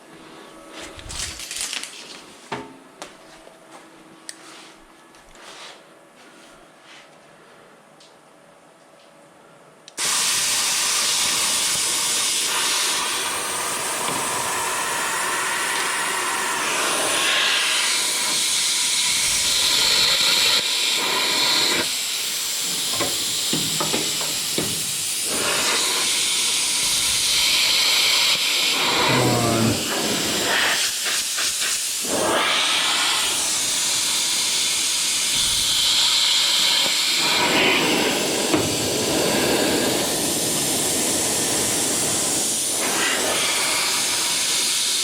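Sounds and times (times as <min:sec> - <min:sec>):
cutting tool hissing on metal: 0:10.0 - 0:45.0.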